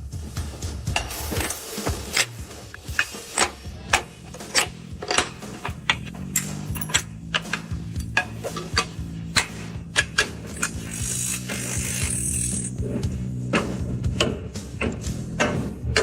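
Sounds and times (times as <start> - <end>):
background music: 0.0 - 16.0
sharp clicks and knocks: 0.9 - 12.7.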